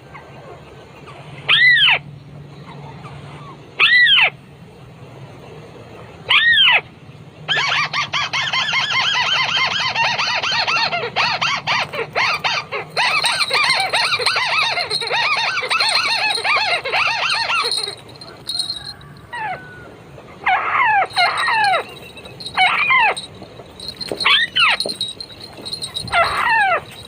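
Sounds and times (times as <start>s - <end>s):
bird calling in arching notes: 7.6s - 19.7s, 20.5s - 27.0s.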